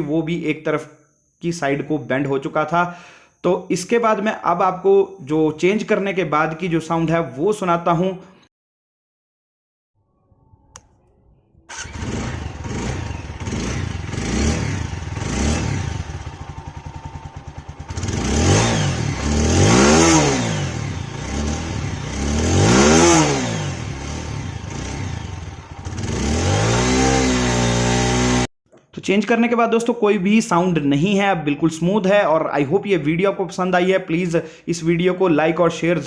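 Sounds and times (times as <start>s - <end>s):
motorcycle engine idling and revving: 11.7s - 28.5s.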